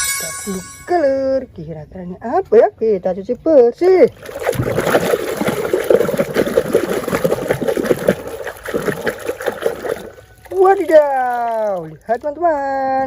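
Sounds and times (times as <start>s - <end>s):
water running and splattering: 4.2s - 13.0s.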